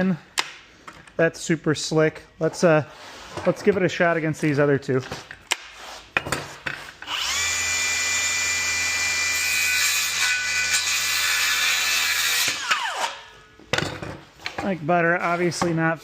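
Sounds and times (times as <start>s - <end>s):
circular saw cutting wood: 7.0s - 13.3s.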